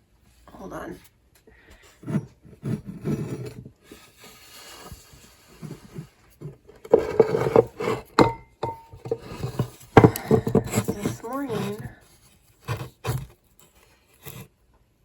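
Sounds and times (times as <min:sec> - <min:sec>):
objects scraping on a surface: 0:01.8 - 0:14.5
knocks and clinks: 0:06.8 - 0:11.9.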